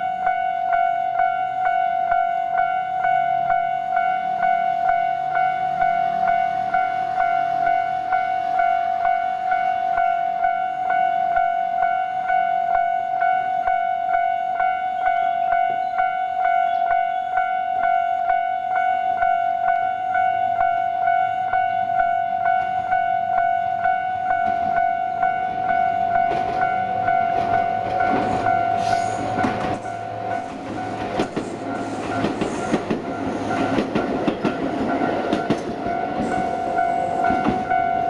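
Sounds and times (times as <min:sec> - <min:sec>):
level crossing warning bell dinging: 0:00.0 - 0:38.0
train wheels clattering over rail joints: 0:27.3 - 0:36.6.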